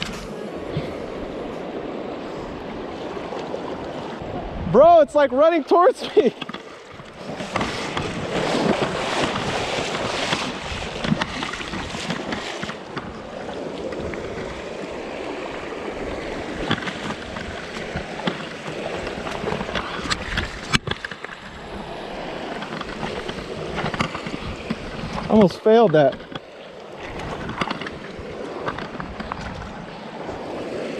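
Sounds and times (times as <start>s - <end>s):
wind buffeting microphone: 0.0s - 25.5s
river current rushing: 0.0s - 30.9s.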